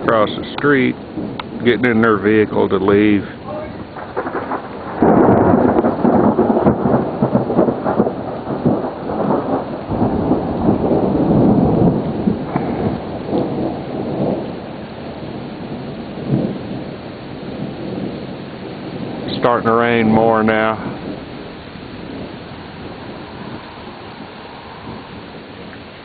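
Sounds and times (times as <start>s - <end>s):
steady rain: 0.0s - 26.0s
thunder rolling and crackling: 0.0s - 26.0s.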